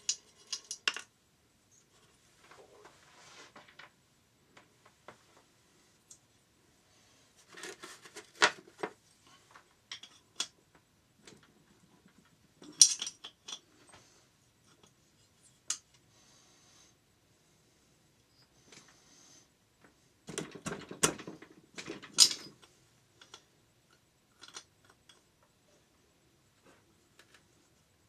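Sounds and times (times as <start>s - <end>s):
metal tools clinking: 12.6s - 13.7s, 22.1s - 23.4s.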